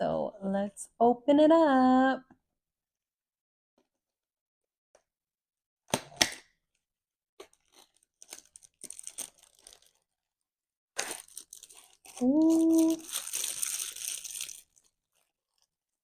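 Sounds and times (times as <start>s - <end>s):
packaging tearing: 7.4s - 10.0s, 11.0s - 15.8s
wrapping crinkling: 7.4s - 10.3s, 11.0s - 16.0s.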